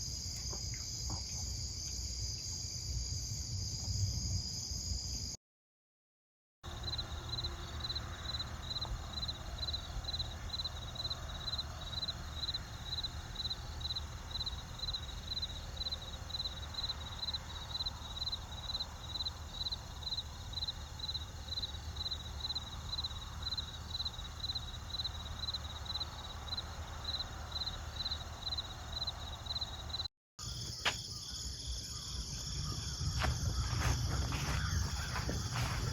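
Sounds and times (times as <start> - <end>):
insects chirping: 0.0 - 5.4, 6.7 - 35.9.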